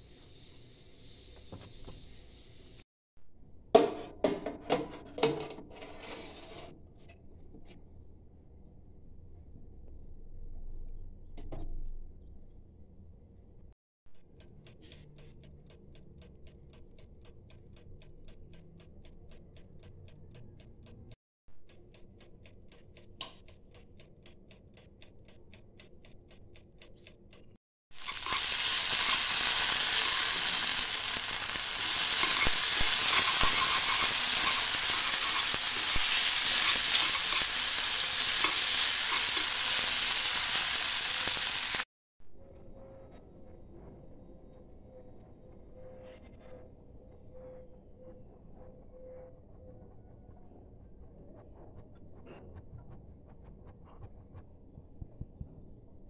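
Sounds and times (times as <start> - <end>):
food sizzling in a pan: 0.0 - 2.8, 27.9 - 41.9.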